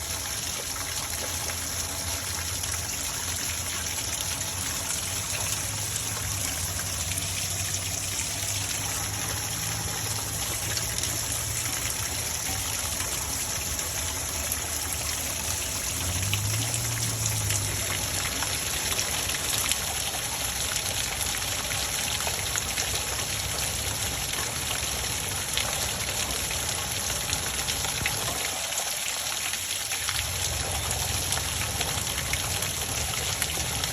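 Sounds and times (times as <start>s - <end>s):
running trickling water: 0.0s - 33.9s.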